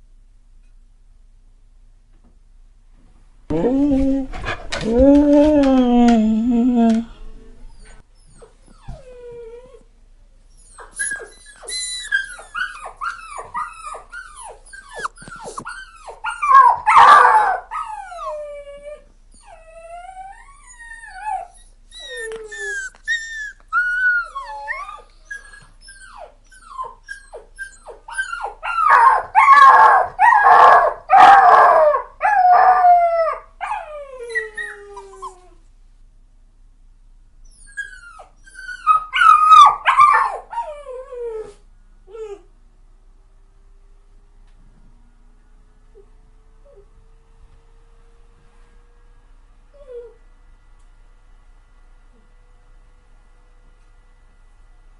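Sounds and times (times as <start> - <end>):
dog whining: 3.5 - 9.9, 10.5 - 35.6, 37.4 - 42.5
dog howling cries: 10.7 - 35.4, 37.8 - 41.5.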